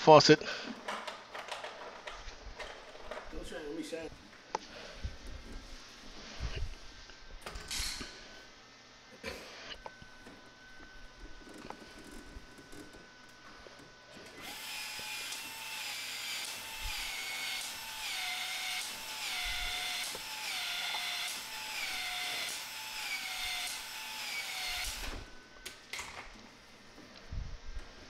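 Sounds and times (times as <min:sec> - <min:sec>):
small tool motor whining: 0:14.1 - 0:25.4.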